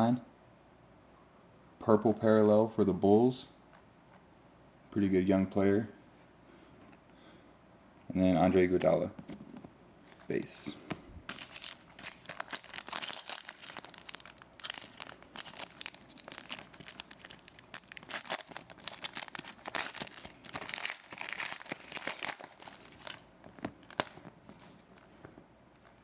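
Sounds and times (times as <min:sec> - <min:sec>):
foil wrapper tearing: 0:11.3 - 0:24.3
foil wrapper crinkling: 0:11.3 - 0:25.1.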